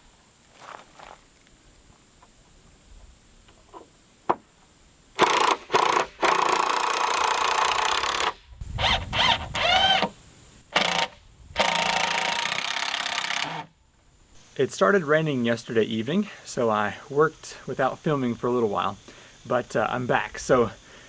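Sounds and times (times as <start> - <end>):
impact driver driving screws: 5.2 - 10.1, 10.7 - 13.7.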